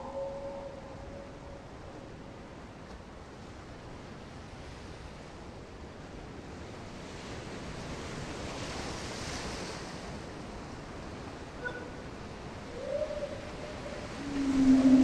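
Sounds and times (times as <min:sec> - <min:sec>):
wind rumble on microphone: 0:00.0 - 0:15.0
sea surf washing onto shore: 0:12.1 - 0:15.0.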